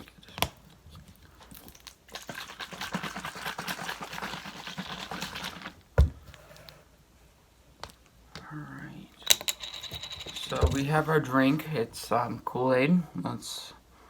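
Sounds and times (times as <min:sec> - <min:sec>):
liquid sloshing in shaken bottle: 0:01.7 - 0:05.8.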